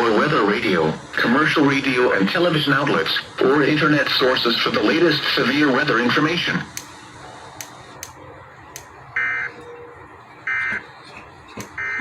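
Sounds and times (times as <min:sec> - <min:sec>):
faint clicks: 0:07.6 - 0:08.9.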